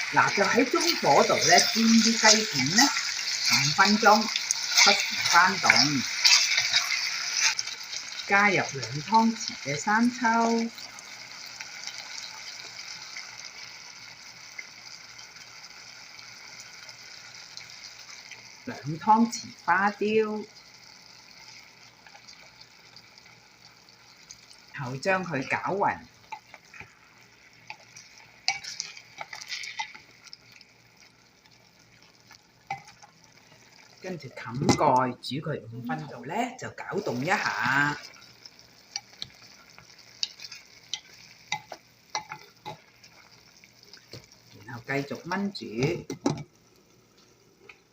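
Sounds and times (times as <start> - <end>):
chicken sizzling in a pan: 0.0 - 47.9
utensil scraping and knocking pot: 0.2 - 7.6, 27.6 - 30.1, 40.2 - 42.9.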